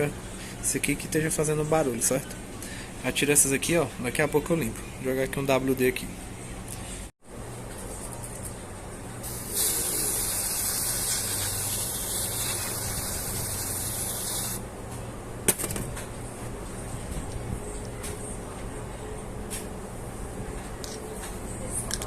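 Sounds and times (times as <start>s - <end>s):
aerosol can spraying hiss: 9.3s - 14.6s.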